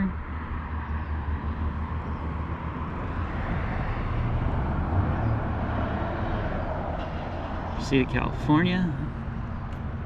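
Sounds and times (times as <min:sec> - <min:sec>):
traffic rumble and road hiss: 0:00.0 - 0:10.0
vehicle passing: 0:00.2 - 0:10.0.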